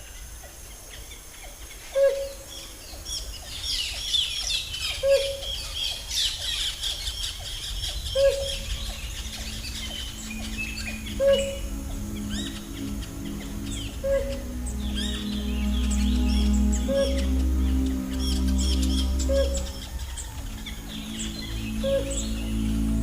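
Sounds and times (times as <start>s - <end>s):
birds chirping and whistling: 3.6s - 23.0s
low steady notes: 7.3s - 23.0s.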